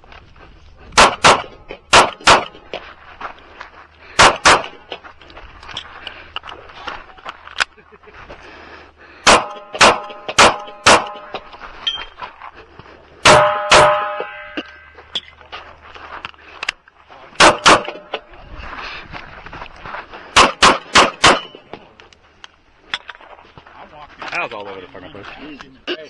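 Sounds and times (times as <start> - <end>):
pistol shots: 1.0 - 2.6, 4.2 - 4.8, 9.2 - 11.4, 13.2 - 14.3, 17.4 - 18.2, 20.4 - 21.6
steel targets ringing: 13.2 - 15.3.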